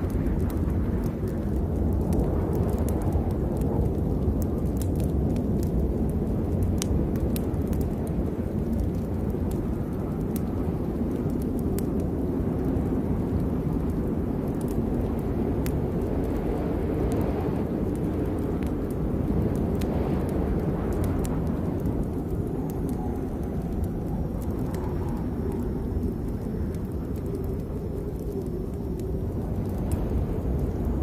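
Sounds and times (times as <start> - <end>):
heavy rain: 0.0 - 31.0
sharp clicks and crackles: 0.0 - 31.0
wind: 0.0 - 31.0.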